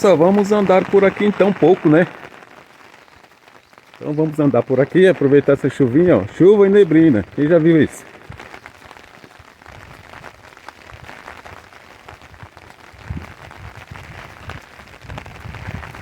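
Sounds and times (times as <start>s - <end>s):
rain pattering: 0.0s - 16.0s.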